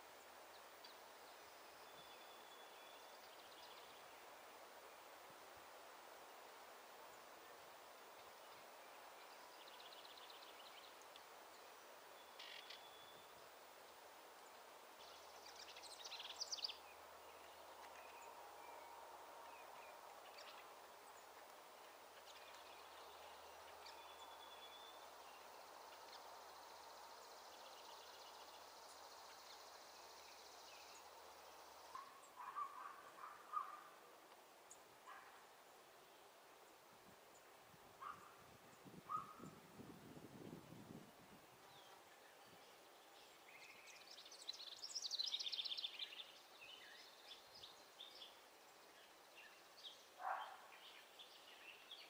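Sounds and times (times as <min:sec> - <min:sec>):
faint background hiss: 0:00.0 - 0:52.0
wild birds chirping: 0:00.0 - 0:52.0
lower bird calls: 0:31.9 - 0:34.0, 0:39.1 - 0:39.6.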